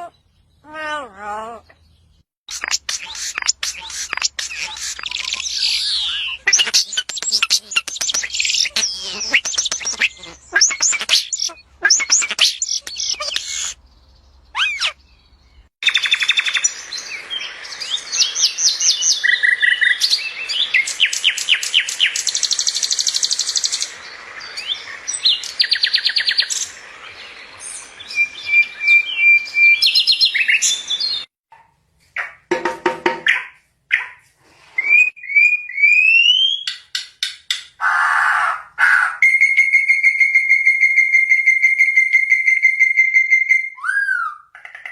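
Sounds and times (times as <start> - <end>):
songbirds singing and chirping: 0.0 - 31.3.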